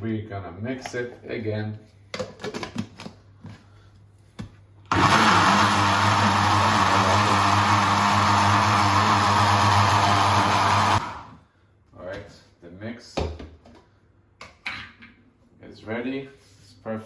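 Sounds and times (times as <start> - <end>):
electric mixer running: 4.9 - 11.3.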